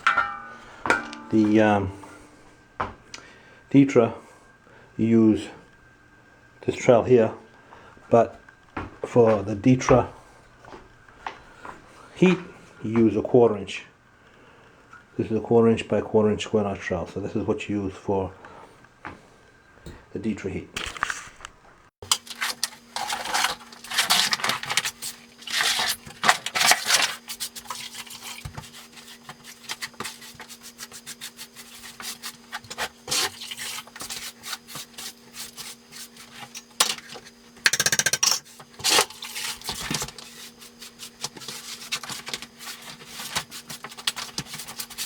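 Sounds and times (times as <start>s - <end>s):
steady low hum: 0.0s - 20.8s
sponge scrubbing wooden floor: 26.7s - 36.5s.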